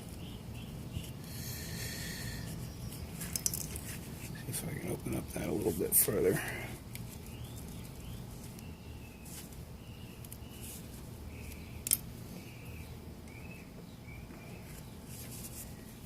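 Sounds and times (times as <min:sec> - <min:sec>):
low steady hum: 0:00.0 - 0:16.0
small bird chirping: 0:07.1 - 0:15.9.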